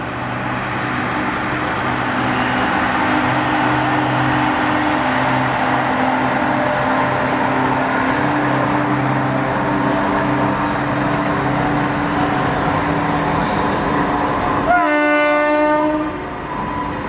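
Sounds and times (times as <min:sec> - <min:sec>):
diesel locomotive engine drone: 0:00.0 - 0:17.0
locomotive horn blast: 0:14.6 - 0:16.3.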